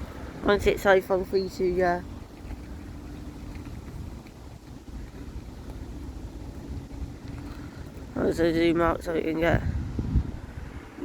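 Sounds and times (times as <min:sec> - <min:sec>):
diesel engine running: 0:00.0 - 0:09.3.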